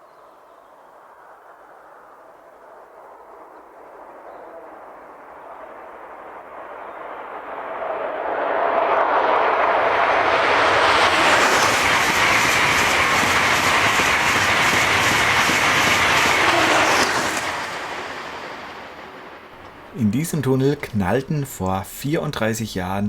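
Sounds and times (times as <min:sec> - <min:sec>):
train passing: 0:04.8 - 0:23.0
train wheels clicking: 0:10.0 - 0:23.0.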